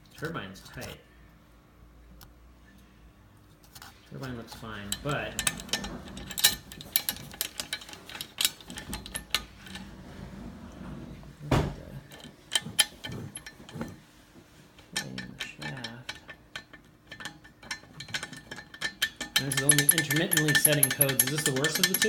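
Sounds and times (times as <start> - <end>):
metal flap clicking and rattling: 3.8 - 9.9, 11.6 - 14.0, 14.9 - 22.0.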